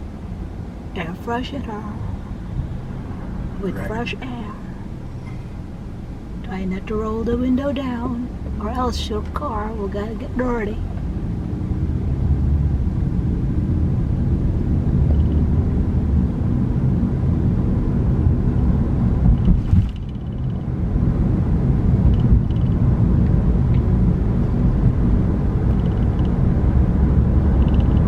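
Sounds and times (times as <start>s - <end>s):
car road and engine rumble: 0.0s - 28.0s
click: 25.7s - 26.4s.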